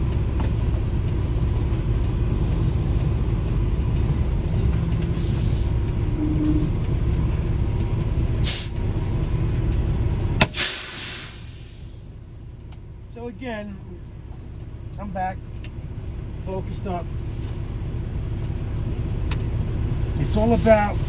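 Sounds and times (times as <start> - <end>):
truck engine low rumble: 0.0 - 21.0
air hiss bursts: 5.2 - 5.8, 8.4 - 8.8, 10.5 - 12.0.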